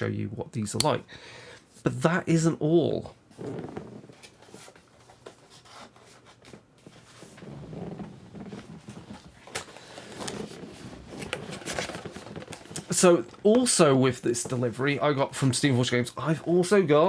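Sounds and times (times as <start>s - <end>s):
cardboard boxes clicking and knocking: 8.9s - 13.7s.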